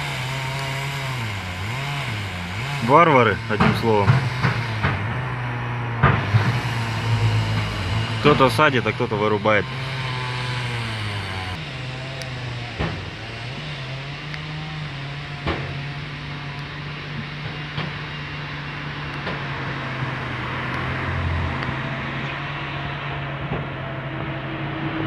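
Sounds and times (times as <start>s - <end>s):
vehicle engine running: 0.0s - 25.0s
sharp knocks: 3.4s - 8.4s, 12.7s - 13.7s, 15.4s - 15.9s.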